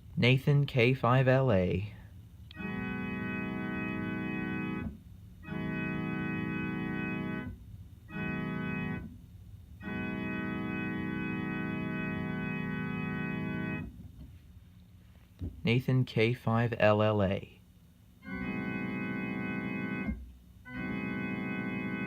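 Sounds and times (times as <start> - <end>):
electronic organ chord: 2.5 - 14.0, 18.2 - 22.0.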